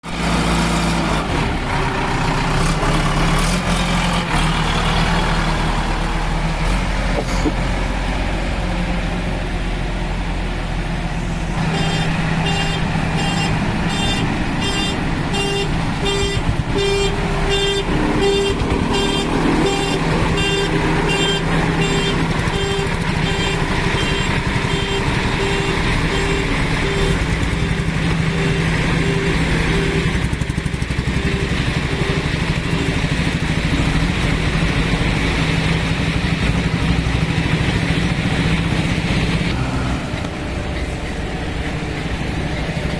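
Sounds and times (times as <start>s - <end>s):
diesel engine running: 0.0s - 42.9s
reversing alarm beeping: 16.8s - 33.4s.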